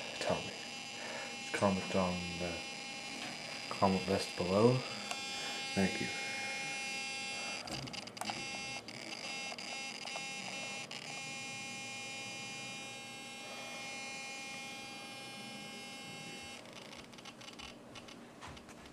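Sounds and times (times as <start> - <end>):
high electrical buzz: 0.0 - 18.2.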